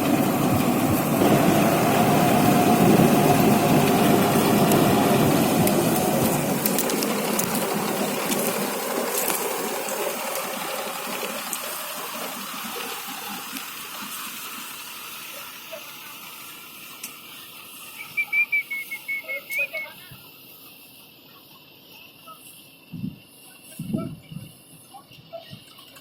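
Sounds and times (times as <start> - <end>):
combine harvester running: 0.0 - 22.0.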